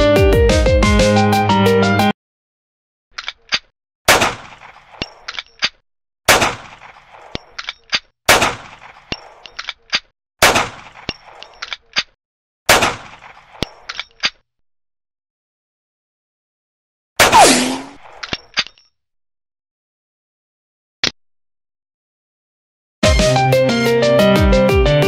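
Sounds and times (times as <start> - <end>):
gunshots with echo: 4.1 - 5.0, 6.3 - 7.3, 12.7 - 13.6, 17.2 - 18.0.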